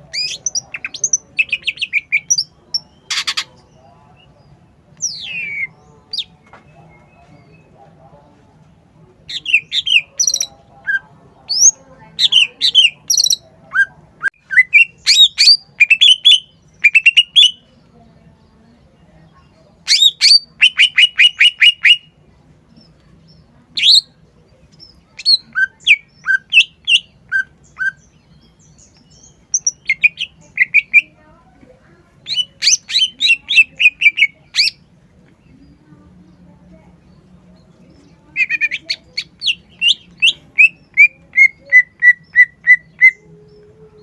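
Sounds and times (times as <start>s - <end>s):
bird singing whistled notes: 5.0s - 6.3s, 24.8s - 31.1s, 32.3s - 34.8s, 38.4s - 43.7s.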